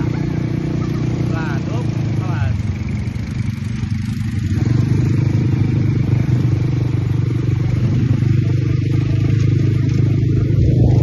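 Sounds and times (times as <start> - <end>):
atv engine running: 0.0 - 11.0.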